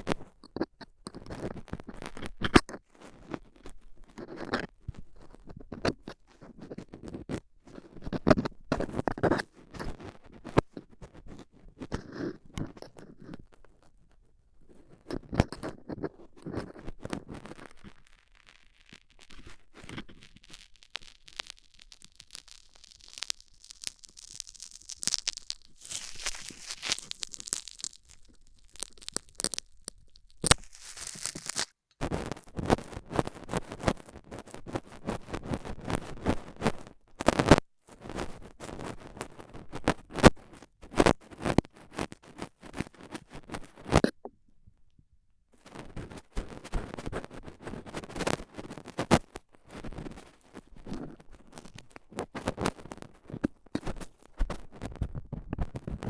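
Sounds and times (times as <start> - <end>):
metal tool scraping in ear canal: 22.5 - 31.7.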